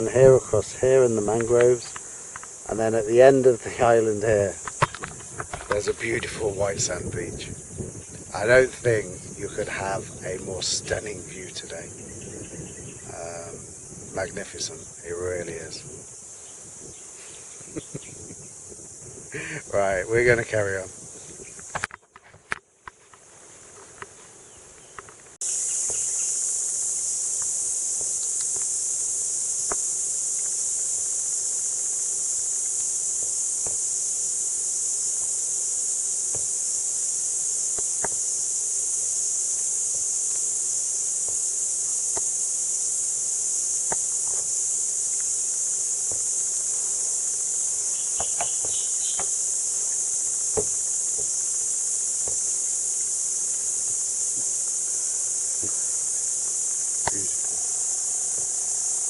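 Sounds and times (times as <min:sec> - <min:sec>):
insect chorus buzzing: 0:00.0 - 0:59.0
faint clicks: 0:01.4 - 0:02.6.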